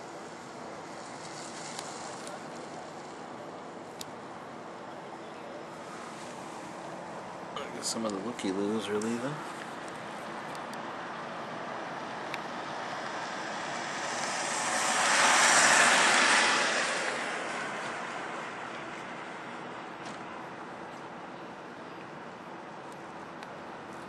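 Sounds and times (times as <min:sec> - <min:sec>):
vehicle passing by: 0:11.0 - 0:20.0.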